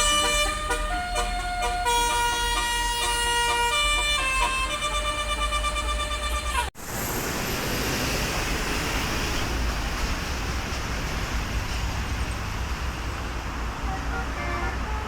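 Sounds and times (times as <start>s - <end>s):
bus horn chord: 0.0s - 6.7s, 13.8s - 15.0s
heavy vehicles passing: 0.0s - 15.0s
road traffic rushing: 0.0s - 15.0s.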